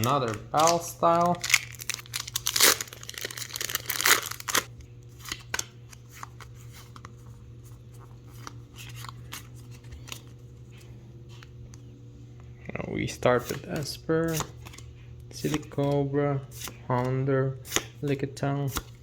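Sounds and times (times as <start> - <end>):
foil wrapper crinkling: 0.0 - 6.3
trading cards clicking and scraping: 0.0 - 11.6, 13.2 - 19.0.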